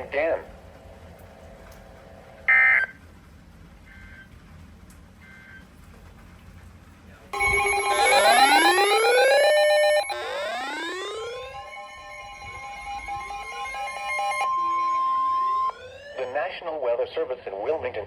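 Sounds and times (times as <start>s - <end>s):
electronic alert tone: 7.4s - 16.4s
data tone bursts: 7.4s - 16.6s.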